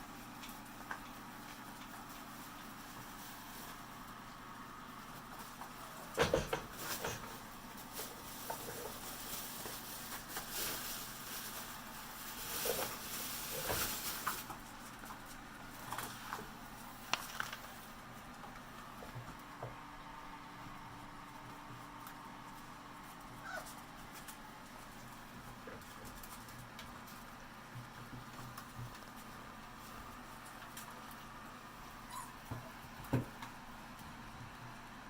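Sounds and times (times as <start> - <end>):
steady background hum: 0.0 - 35.0.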